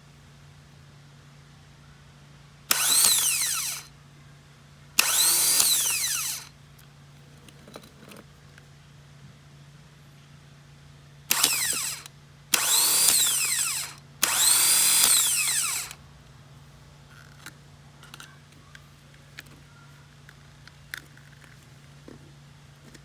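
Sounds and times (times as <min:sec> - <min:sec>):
electric power drill whining: 0:02.7 - 0:03.9, 0:05.0 - 0:06.5, 0:11.3 - 0:16.0.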